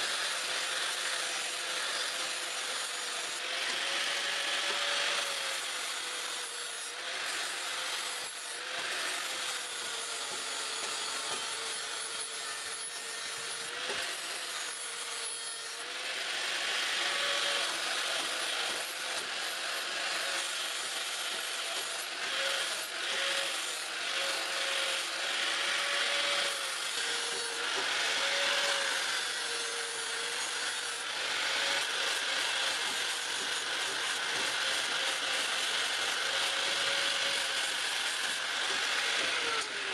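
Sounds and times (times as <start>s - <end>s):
power grinder abrading steel: 0.0s - 39.9s.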